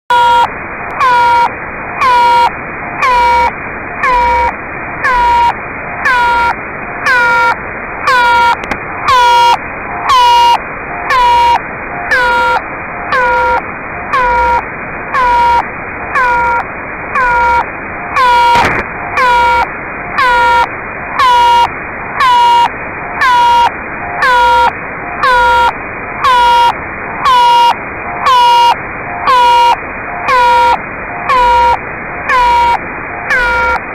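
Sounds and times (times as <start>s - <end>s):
beeping tone pulses: 0.1s - 33.8s
radio hiss: 16.6s - 20.1s.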